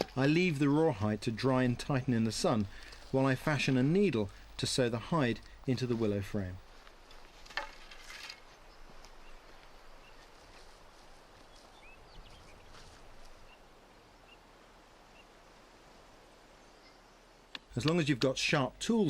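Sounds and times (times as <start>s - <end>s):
short rustling or scraping: 7.1s - 8.6s
distant bird chirps: 8.6s - 10.4s.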